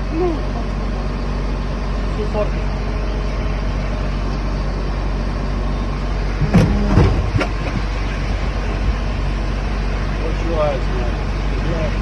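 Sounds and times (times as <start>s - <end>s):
diesel engines humming: 0.0s - 12.0s
clanking knocks: 6.4s - 8.4s.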